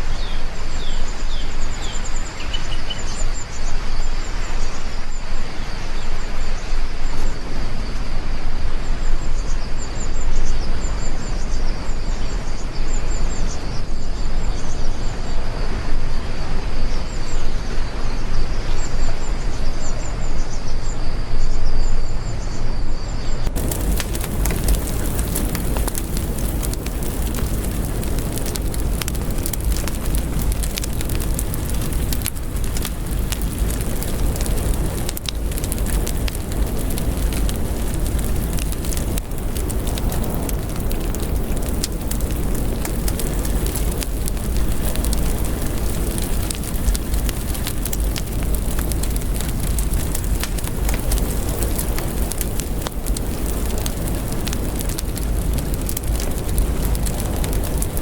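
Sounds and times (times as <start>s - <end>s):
deep rumble: 23.4s - 58.0s
heavy rain on a window: 23.5s - 58.0s.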